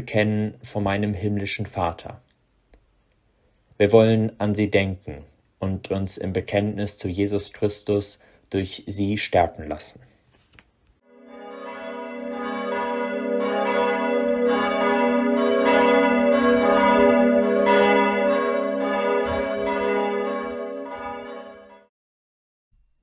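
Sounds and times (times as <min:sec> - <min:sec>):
church bells ringing: 0:11.1 - 0:21.9.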